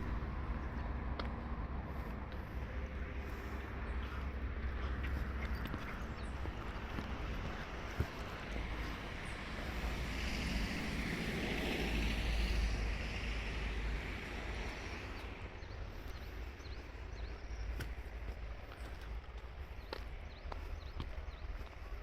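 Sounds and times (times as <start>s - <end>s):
vehicle passing by: 0.0s - 17.3s.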